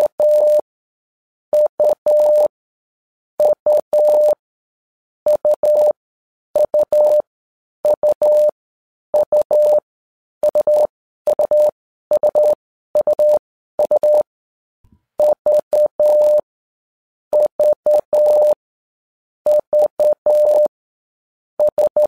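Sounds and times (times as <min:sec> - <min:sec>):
morse code beeps: 0:00.0 - 0:00.6, 0:01.6 - 0:02.5, 0:03.4 - 0:04.4, 0:05.3 - 0:06.0, 0:06.6 - 0:08.6, 0:09.2 - 0:09.8, 0:10.4 - 0:14.3, 0:15.2 - 0:16.4, 0:17.3 - 0:18.6, 0:19.5 - 0:20.7, 0:21.6 - 0:22.0.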